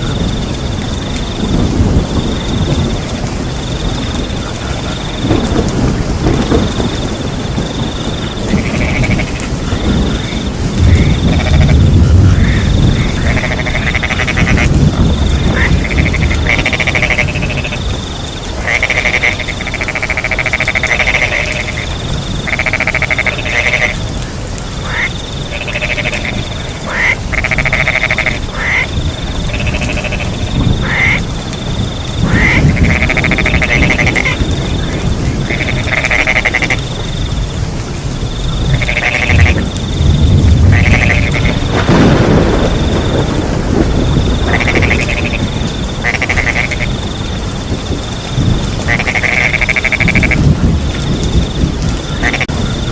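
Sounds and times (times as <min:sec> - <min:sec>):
crickets chirping: 0:00.0 - 0:52.9
frogs croaking: 0:00.0 - 0:52.9
rain rushing: 0:00.0 - 0:52.9.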